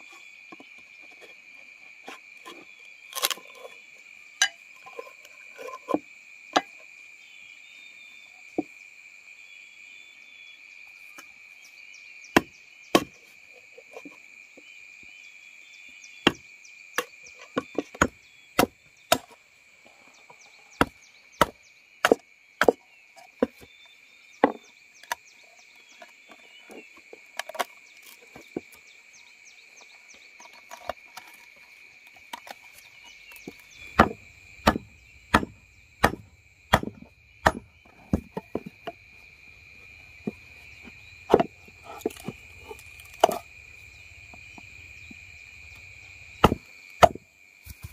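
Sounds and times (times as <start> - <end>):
high insect drone: 0.0 - 47.9
blade chopping wood: 12.4 - 13.2, 17.0 - 19.4, 20.8 - 22.8, 33.3 - 39.0, 40.2 - 43.5, 45.8 - 47.9.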